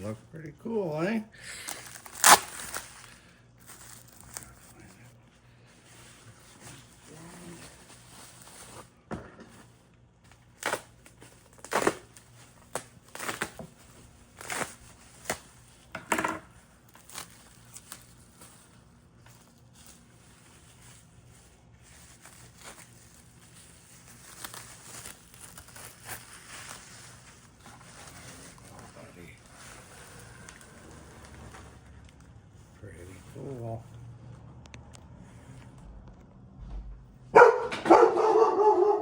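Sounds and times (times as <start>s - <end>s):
packing material crinkling: 0.0s - 15.9s, 16.5s - 33.5s
soft handling noises: 1.7s - 11.5s, 16.5s - 37.1s.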